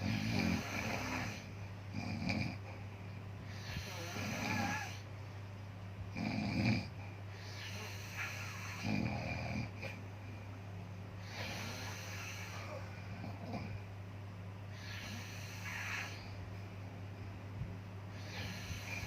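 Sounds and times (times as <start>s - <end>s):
slow regular snoring: 0.0s - 2.8s, 3.5s - 5.0s, 6.1s - 10.0s, 11.2s - 13.8s, 14.7s - 16.4s, 18.1s - 19.0s
steady low hum: 0.0s - 19.0s.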